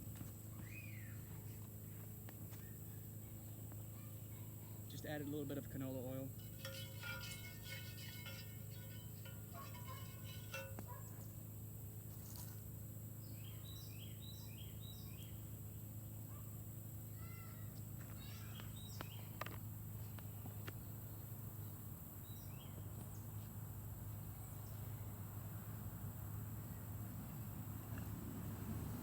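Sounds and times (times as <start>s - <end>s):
low background hum: 0.0s - 28.8s
birds chirping: 0.4s - 11.4s.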